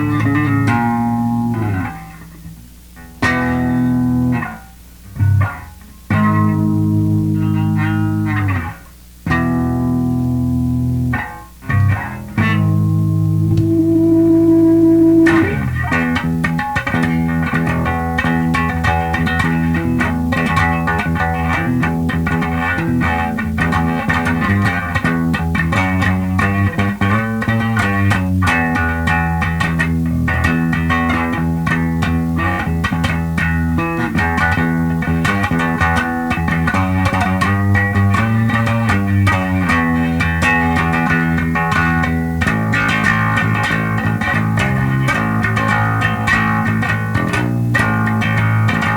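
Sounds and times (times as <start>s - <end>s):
electric bass riffs: 12.8s - 15.9s.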